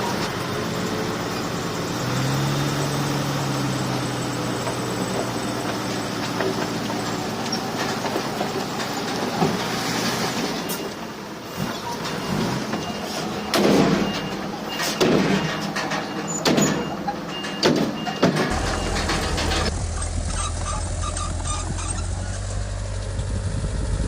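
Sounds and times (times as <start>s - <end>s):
heavy diesel machinery running: 0.0s - 24.0s
loud metallic clanks: 13.4s - 22.5s.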